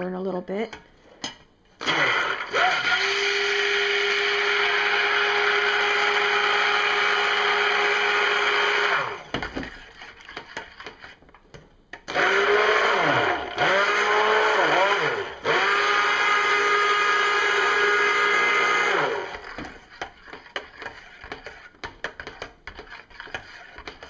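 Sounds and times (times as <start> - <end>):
stick blender running: 1.8 - 10.1, 12.0 - 21.7.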